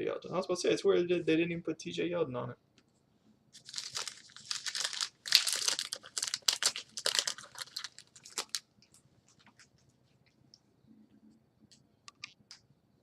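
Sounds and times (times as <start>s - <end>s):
plastic wrapper crinkling and tearing: 3.6s - 8.7s.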